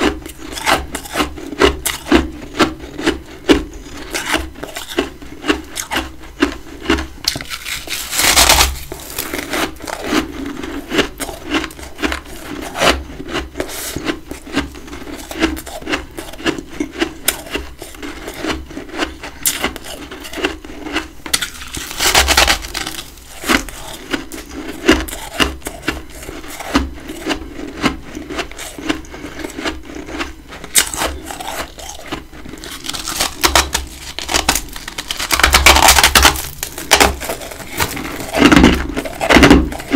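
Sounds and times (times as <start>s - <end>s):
chewing and crunching frost: 0.0s - 39.9s.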